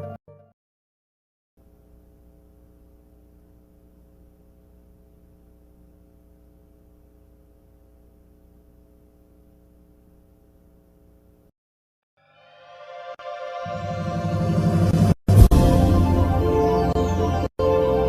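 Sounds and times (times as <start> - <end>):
faint electrical hum: 1.6 - 11.5.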